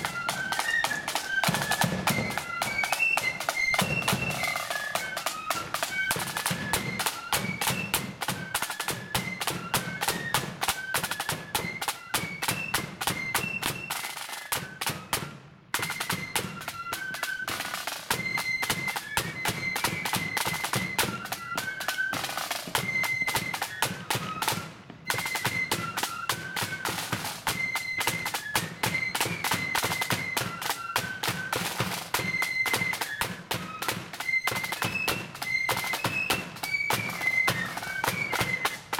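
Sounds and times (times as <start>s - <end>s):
flutes playing a tune: 0.0s - 38.9s
rapid snare drumming: 0.0s - 38.9s.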